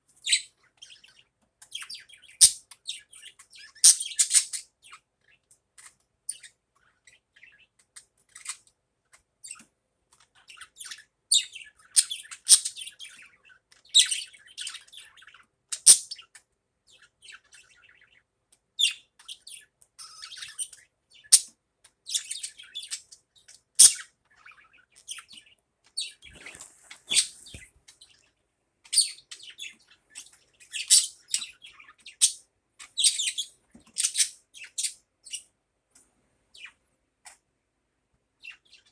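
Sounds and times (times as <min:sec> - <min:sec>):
budgerigar chirping and warbling: 0:00.2 - 0:05.0, 0:10.3 - 0:18.2, 0:18.8 - 0:35.5.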